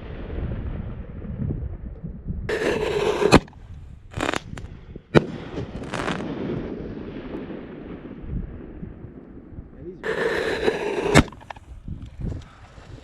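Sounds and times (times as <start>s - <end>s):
steady low rumble: 0.1s - 12.2s
firework rushing hiss: 2.5s - 3.5s, 4.1s - 4.7s, 10.0s - 11.6s
firework sharp bangs: 2.5s - 3.6s, 4.2s - 8.7s, 10.0s - 11.6s.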